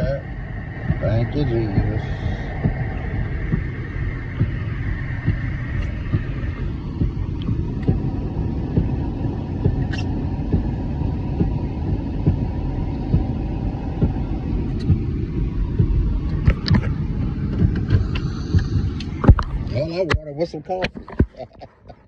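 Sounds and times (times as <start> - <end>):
engine and tyre rumble: 0.0 - 22.0
small irregular thumps: 15.8 - 19.7, 20.8 - 21.5.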